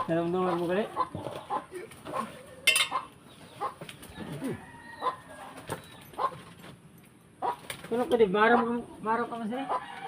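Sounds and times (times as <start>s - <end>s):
chickens clucking: 0.0s - 10.0s.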